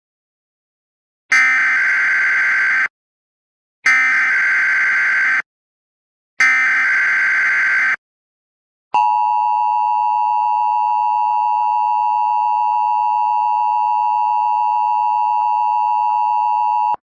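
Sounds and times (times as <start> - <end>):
two-tone alarm: 1.3 - 2.9, 3.9 - 5.4, 6.4 - 8.0, 9.0 - 17.0.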